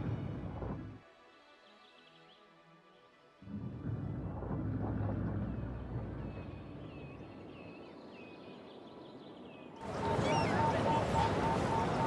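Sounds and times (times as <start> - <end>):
low rumble: 3.5 - 7.4.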